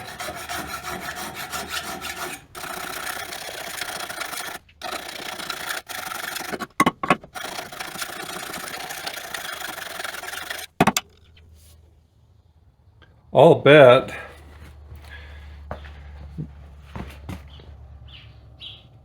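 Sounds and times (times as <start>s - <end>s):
abrasive scrubbing on metal pipe: 0.0s - 11.7s
sharp knocks: 6.6s - 7.5s, 10.7s - 11.3s.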